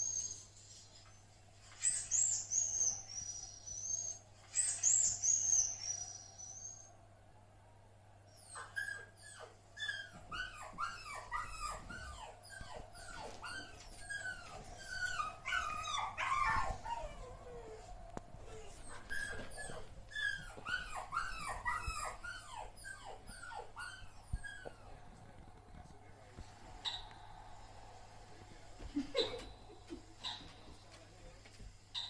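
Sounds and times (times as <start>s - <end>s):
puppy whimpering: 8.4s - 25.0s.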